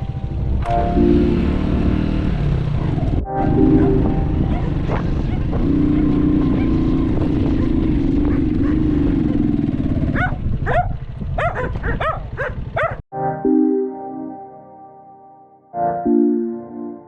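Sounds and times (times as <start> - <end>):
motorbike engine running: 0.0 - 13.0
dog barking: 2.8 - 9.0, 10.1 - 13.0.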